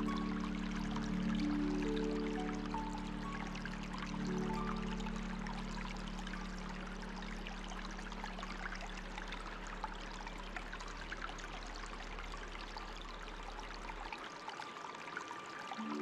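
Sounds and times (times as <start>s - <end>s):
low steady hum: 0.0s - 14.1s
water trickling and dripping: 0.0s - 16.0s.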